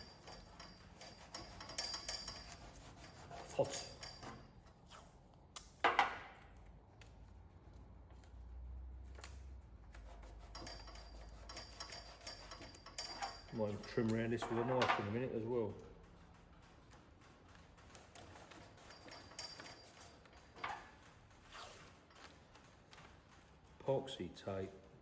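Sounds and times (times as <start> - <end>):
sharp rasp: 0.0 - 5.2, 9.9 - 14.5
paper and tape rubbed on steel: 0.0 - 5.4, 9.8 - 14.8, 17.8 - 22.4.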